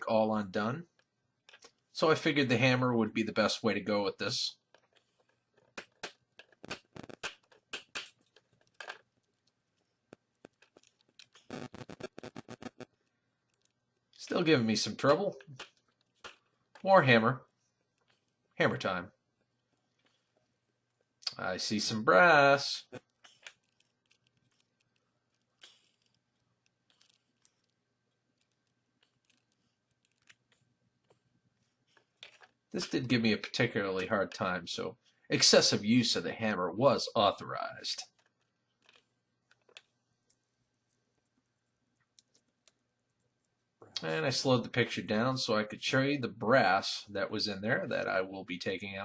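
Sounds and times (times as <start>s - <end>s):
faint clicks and taps: 0.8s - 1.9s, 4.6s - 18.6s, 22.9s - 33.2s, 38.0s - 44.1s.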